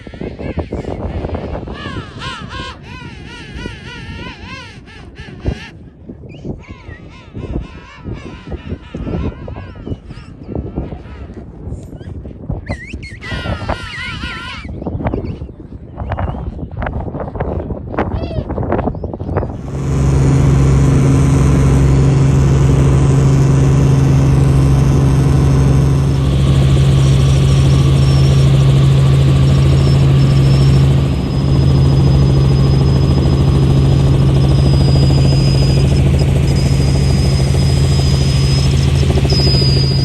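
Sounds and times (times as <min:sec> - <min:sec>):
helicopter engine and rotor drone: 0:19.4 - 0:40.0
thin high whine: 0:19.6 - 0:40.0.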